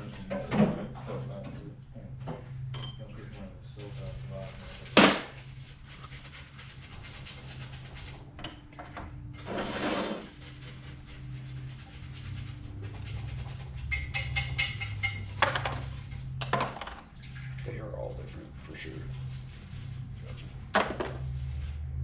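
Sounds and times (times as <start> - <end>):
short scraping rush: 9.4 - 13.8.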